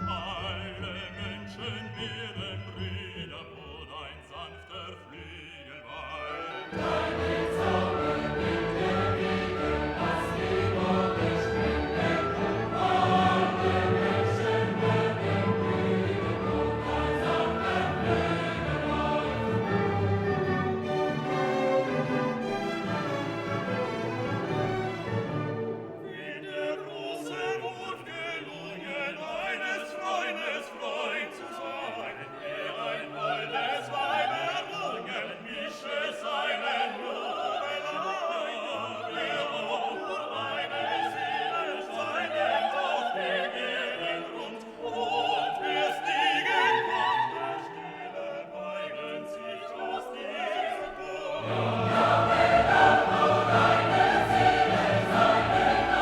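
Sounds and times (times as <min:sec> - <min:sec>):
operatic singing with orchestra: 0:00.0 - 0:56.0.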